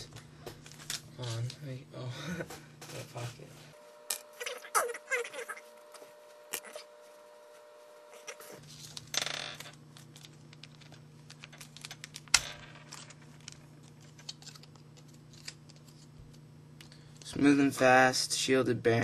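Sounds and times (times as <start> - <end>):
steady low hum: 0.0 - 19.0
plastic package clicks and rattles: 10.0 - 15.9.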